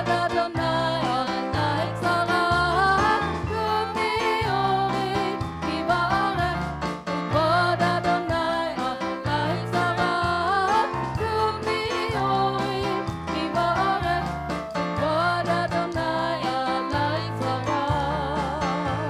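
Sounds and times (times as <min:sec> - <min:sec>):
person singing melody: 0:00.0 - 0:19.0
worship song with band: 0:00.0 - 0:19.0.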